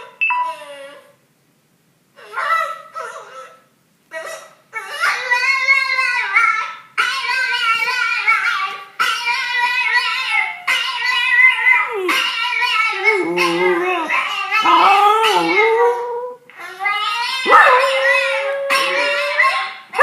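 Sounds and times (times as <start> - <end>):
dog howling: 11.1 - 16.4, 17.4 - 20.0.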